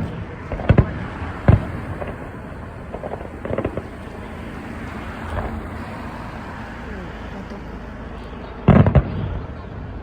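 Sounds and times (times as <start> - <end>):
crackling pops: 0.0 - 5.6
fireworks bursting: 0.0 - 6.6, 8.6 - 9.9.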